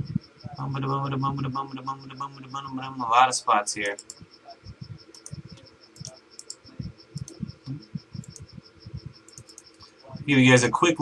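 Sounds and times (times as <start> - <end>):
cricket chirping: 0.0 - 11.0
scattered clicks: 3.8 - 10.3
soft low thumps: 4.0 - 9.4.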